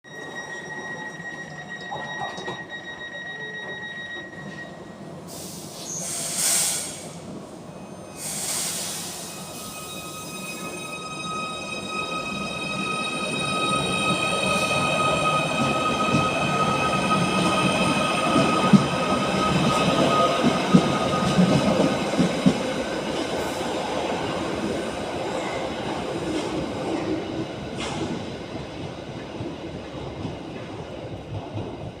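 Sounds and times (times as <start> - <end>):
electric train whine: 7.1 - 28.0.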